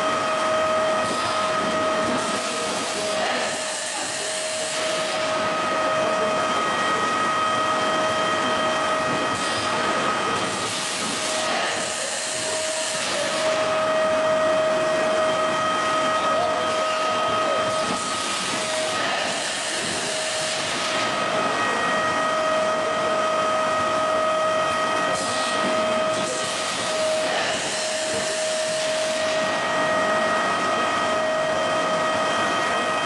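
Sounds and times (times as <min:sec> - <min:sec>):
machine whining: 0:00.0 - 0:33.0
machine hissing: 0:00.9 - 0:06.2, 0:09.3 - 0:14.5, 0:15.9 - 0:21.6, 0:25.1 - 0:29.8.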